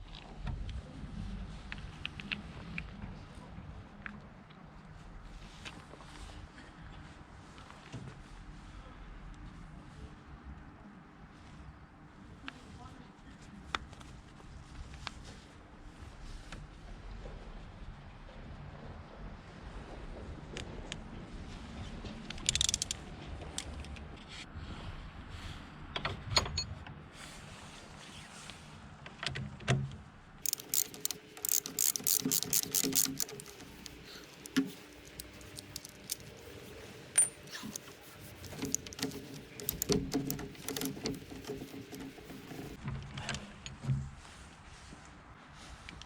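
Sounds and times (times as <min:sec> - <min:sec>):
metal clicks and knocks of tools: 0:22.3 - 0:24.0, 0:30.4 - 0:42.8
rapid ratchet clicking: 0:30.4 - 0:42.8.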